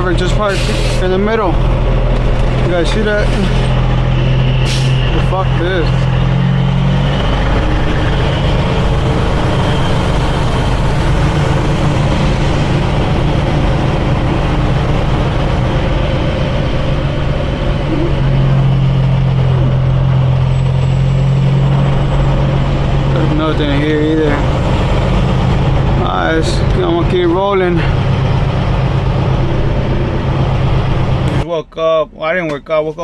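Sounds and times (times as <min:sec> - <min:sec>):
diesel truck engine droning: 0:00.0 - 0:33.0.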